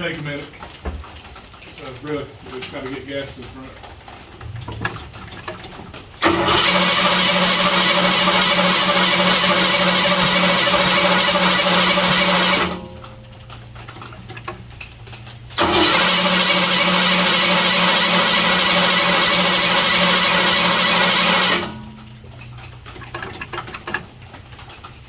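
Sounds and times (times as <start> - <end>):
starter motor cranking engine: 3.7 - 25.0.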